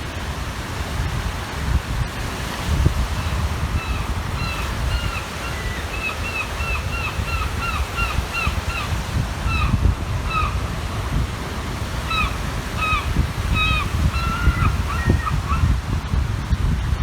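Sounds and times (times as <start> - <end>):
waves on the shore: 0.0 - 17.0
wind: 0.0 - 17.0
gull calling: 3.1 - 15.8.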